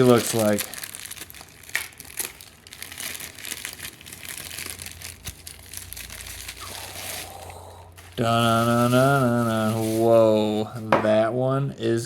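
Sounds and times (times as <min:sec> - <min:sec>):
packaging crinkling: 0:00.0 - 0:10.3.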